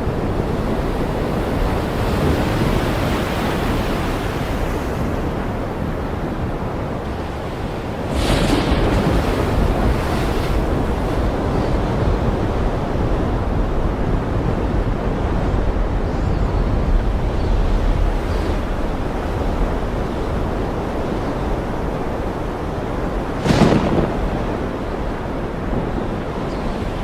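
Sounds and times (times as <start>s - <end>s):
deep surf rumble: 0.0s - 27.0s
ocean waves washing: 0.0s - 27.0s
wave breaking: 7.0s - 11.4s, 17.6s - 27.0s.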